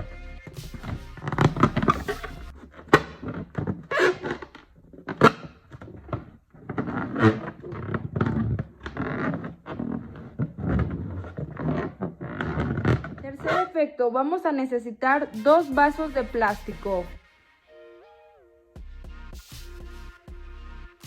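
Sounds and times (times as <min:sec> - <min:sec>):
balloon thumps and squeaks: 0:00.6 - 0:13.8.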